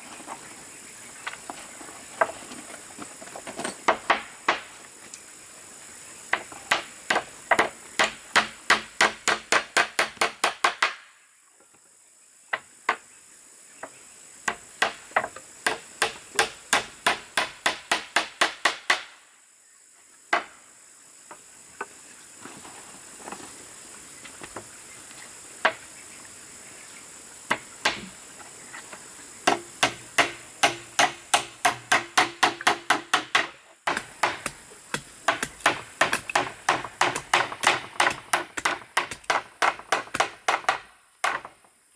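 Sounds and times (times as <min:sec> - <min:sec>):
insects buzzing: 0:00.0 - 0:41.9
hammer driving nails into wood: 0:06.7 - 0:11.0, 0:15.7 - 0:19.1, 0:29.5 - 0:41.5.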